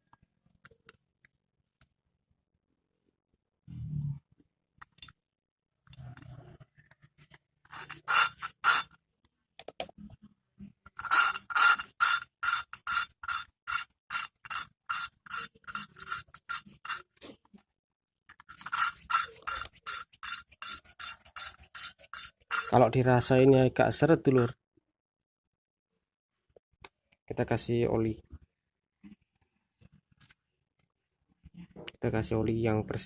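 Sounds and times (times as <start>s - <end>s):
gritty valve lapping scraping: 7.7s - 8.9s, 11.0s - 17.4s, 18.4s - 22.8s.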